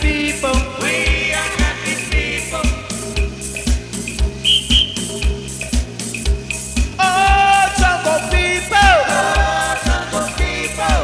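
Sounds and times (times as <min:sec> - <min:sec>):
band playing dance groove: 0:00.0 - 0:11.0
kick drum beat: 0:04.2 - 0:07.5
high whistle: 0:04.4 - 0:05.7.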